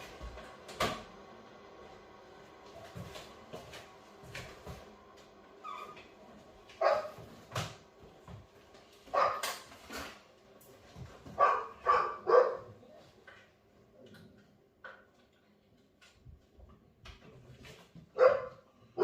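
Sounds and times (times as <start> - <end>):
dog barking: 6.8 - 7.2, 9.1 - 9.5, 11.4 - 12.8, 18.2 - 19.0.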